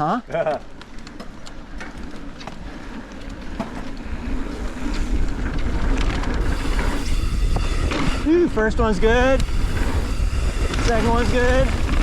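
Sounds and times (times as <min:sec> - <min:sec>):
bike tyres on dirt: 0:00.0 - 0:12.0
wind rush on microphone: 0:04.0 - 0:12.0.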